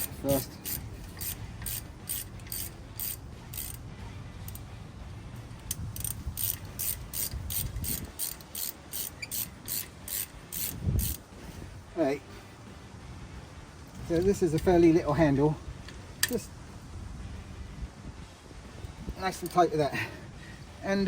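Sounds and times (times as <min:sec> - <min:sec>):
ratchet wrench clicking: 0:00.0 - 0:03.8, 0:04.4 - 0:04.7, 0:05.4 - 0:11.3.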